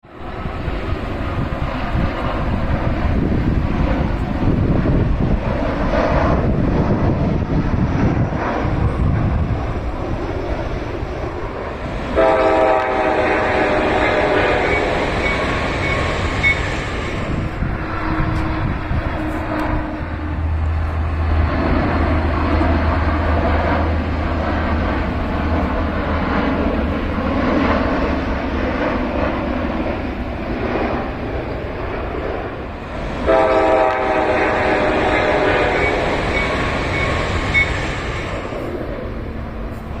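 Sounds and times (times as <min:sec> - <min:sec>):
train rumbling past: 0:00.0 - 0:40.0
train horn chord: 0:12.1 - 0:15.4, 0:33.2 - 0:36.5.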